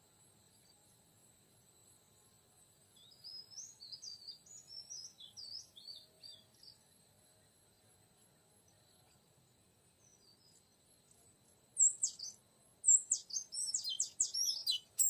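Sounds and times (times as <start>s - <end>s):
high insect drone: 0.0s - 15.0s
bird singing whistled notes: 3.0s - 6.8s, 11.8s - 15.0s.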